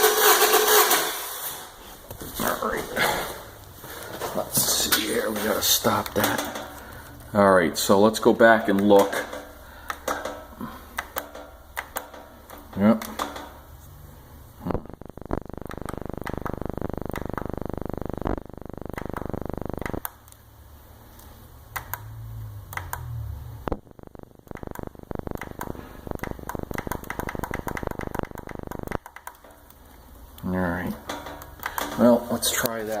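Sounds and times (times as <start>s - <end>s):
irregular sharp clicks: 8.7s - 13.5s, 15.3s - 20.5s, 21.2s - 30.5s, 31.4s - 32.0s.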